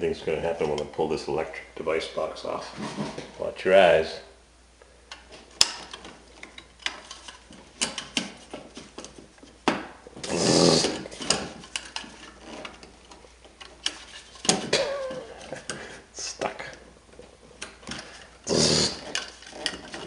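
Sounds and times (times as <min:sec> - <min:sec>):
metal clicks and knocks: 0:05.1 - 0:09.8, 0:11.0 - 0:14.8
tool rasping: 0:18.0 - 0:20.0.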